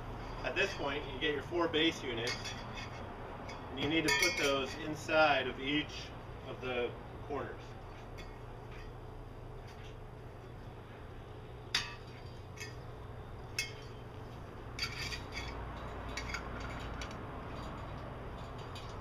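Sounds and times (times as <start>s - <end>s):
metallic clinks and knocks: 2.2s - 4.7s, 11.7s - 14.1s, 14.7s - 19.0s.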